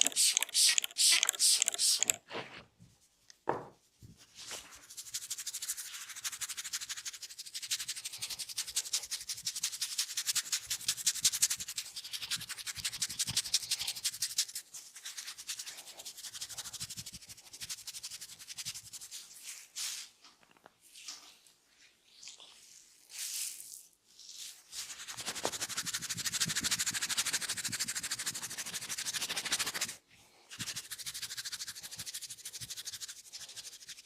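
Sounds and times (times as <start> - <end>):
hands rubbing against skin: 0.0 - 2.2, 4.1 - 20.1, 24.4 - 34.0.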